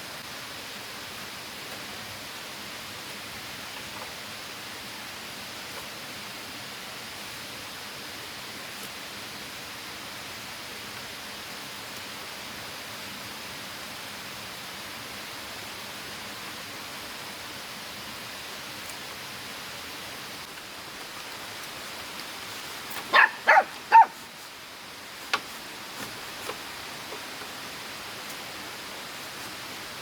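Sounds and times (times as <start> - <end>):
dog barking: 23.1 - 24.2.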